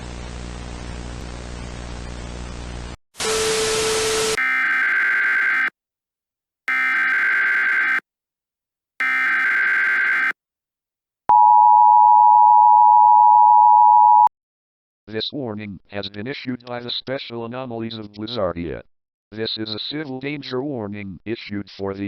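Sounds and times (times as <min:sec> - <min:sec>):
two-tone attention signal: 0:11.3 - 0:14.3.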